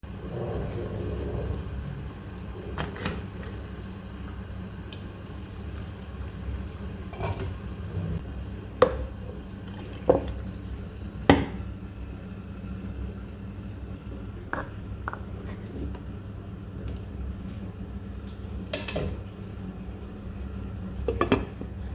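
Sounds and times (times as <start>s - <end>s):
low steady hum: 0.0s - 21.9s.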